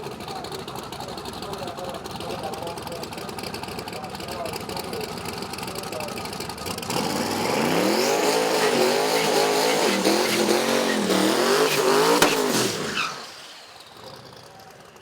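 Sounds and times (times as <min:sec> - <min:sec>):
engine revving hard: 0:06.7 - 0:14.5
sharp crack: 0:11.0 - 0:13.8.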